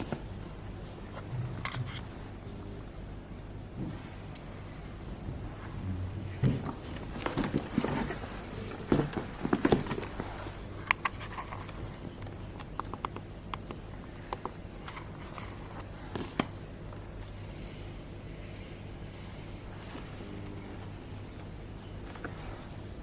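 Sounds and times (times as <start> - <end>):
steady low hum: 0.0 - 23.0
rustling: 3.8 - 13.0.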